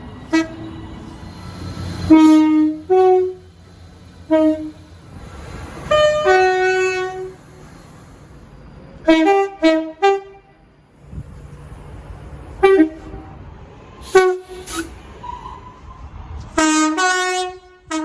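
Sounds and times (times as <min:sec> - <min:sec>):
train horn blasts: 0:00.3 - 0:00.9, 0:02.1 - 0:03.5, 0:04.3 - 0:04.9, 0:05.9 - 0:07.4, 0:09.0 - 0:10.6, 0:12.6 - 0:13.4, 0:14.0 - 0:14.9, 0:16.5 - 0:18.0.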